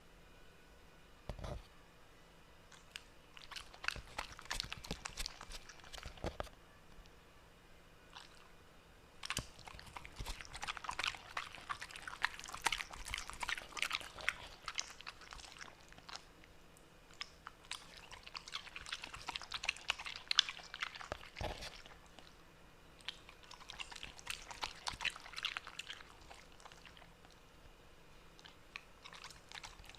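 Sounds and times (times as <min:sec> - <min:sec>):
pet crunching spinach leaves: 0:02.7 - 0:06.5, 0:09.2 - 0:16.3, 0:17.1 - 0:22.3, 0:23.0 - 0:27.4, 0:28.4 - 0:29.9.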